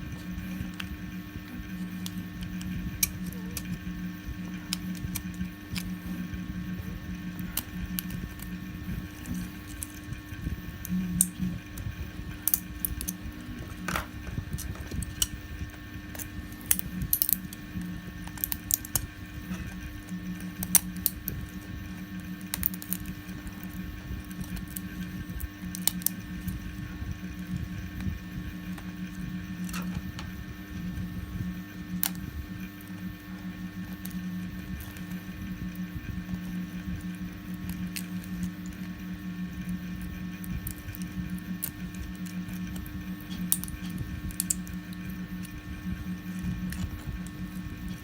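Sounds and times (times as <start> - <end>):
steady low hum: 0.0 - 48.0
pliers snapping plastic: 12.4 - 15.4, 16.1 - 17.6, 18.2 - 19.8, 20.6 - 21.5, 22.4 - 24.8, 25.7 - 26.2, 42.8 - 45.1.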